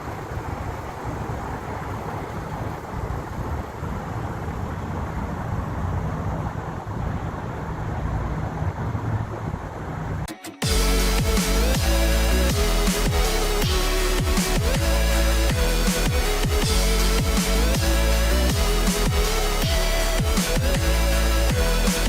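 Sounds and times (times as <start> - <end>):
car engine running: 4.4 - 22.0.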